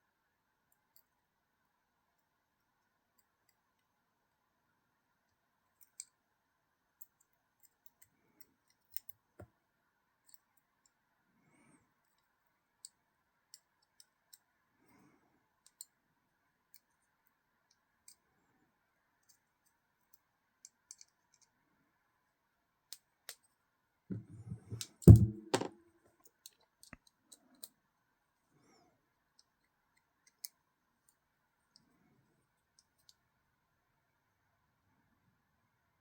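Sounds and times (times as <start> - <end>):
small tools clicking and tapping: 19.2 - 21.5.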